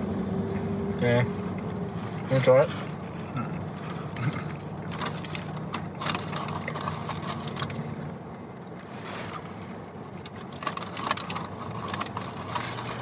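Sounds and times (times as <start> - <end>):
food wrappers rustling: 4.9 - 7.8, 10.4 - 13.0.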